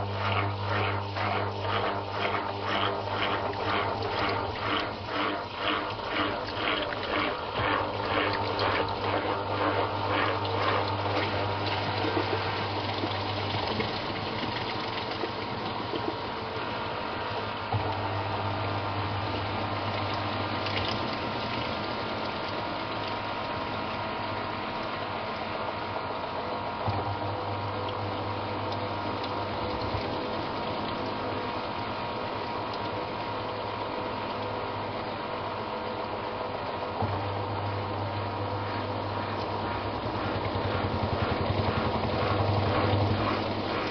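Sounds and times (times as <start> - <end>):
water running: 0.0 - 16.7, 38.6 - 43.9
washing machine motor hum: 0.0 - 43.9
washing machine swishing water: 0.0 - 43.9.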